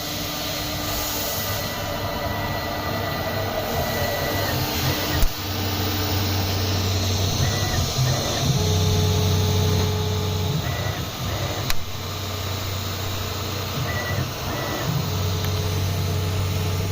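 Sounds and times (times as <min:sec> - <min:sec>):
cnc router humming: 0:00.0 - 0:16.9
sharp click: 0:05.2 - 0:05.4, 0:11.6 - 0:11.9.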